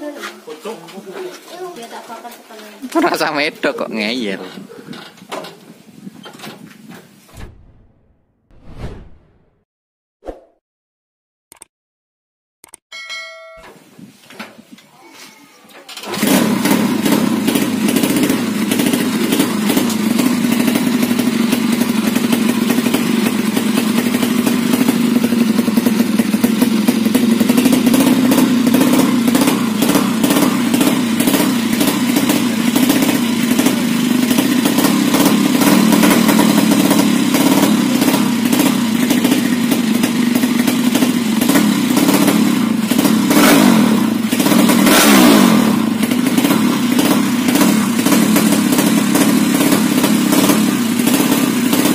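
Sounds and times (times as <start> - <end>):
motorcycle engine running: 16.0 - 51.9.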